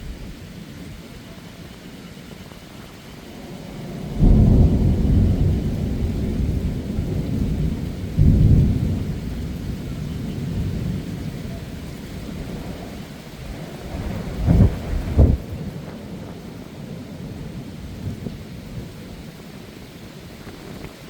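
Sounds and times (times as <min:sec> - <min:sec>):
heavy rain: 0:00.0 - 0:21.0
thunder crashing and rumbling: 0:03.4 - 0:19.3.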